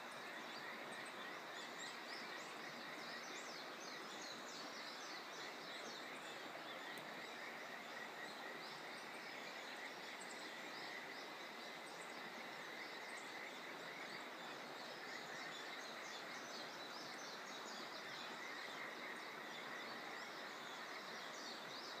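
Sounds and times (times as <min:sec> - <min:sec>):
faint steady hiss: 0:00.0 - 0:22.0.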